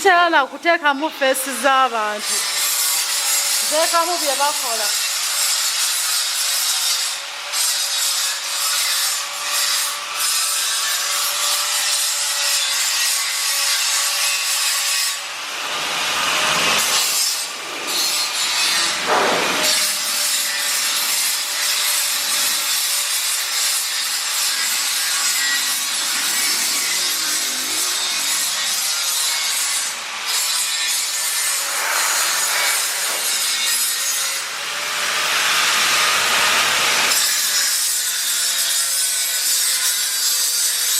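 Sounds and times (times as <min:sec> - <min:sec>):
power tool grinding metal: 0:00.0 - 0:40.9.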